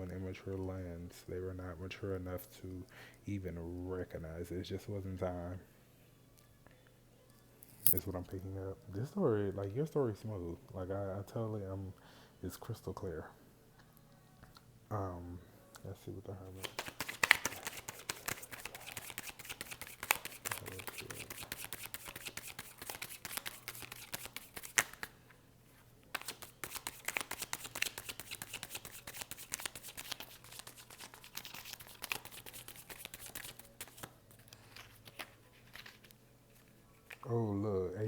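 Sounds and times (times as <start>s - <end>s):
cards being shuffled: 16.6s - 25.2s, 26.1s - 37.3s.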